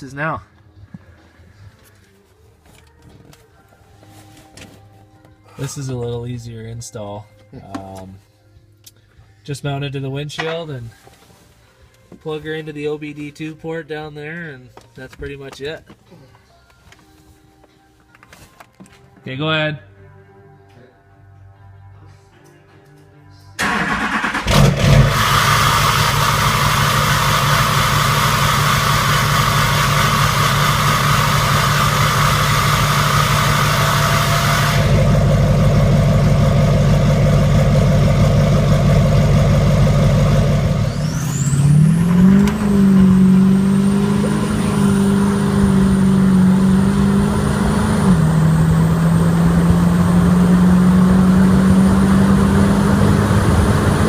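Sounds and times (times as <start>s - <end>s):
diesel truck engine running loud: 24.4s - 54.0s.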